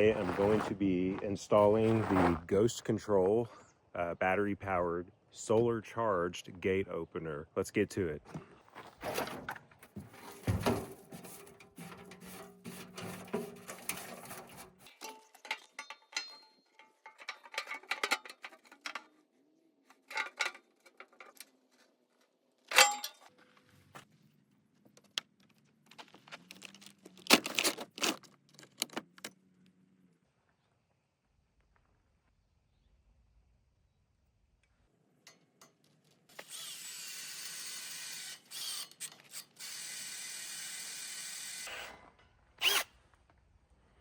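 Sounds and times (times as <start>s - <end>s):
metal tools clinking and rattling: 10.2s - 19.1s, 20.0s - 21.5s, 22.7s - 23.3s
sharp metallic clanks: 14.9s - 18.6s, 22.7s - 23.2s.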